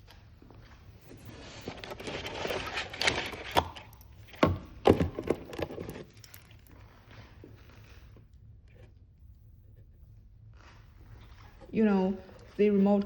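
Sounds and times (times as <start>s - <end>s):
paper and packaging rustling: 1.1s - 8.1s
hard items knocking: 4.3s - 6.1s.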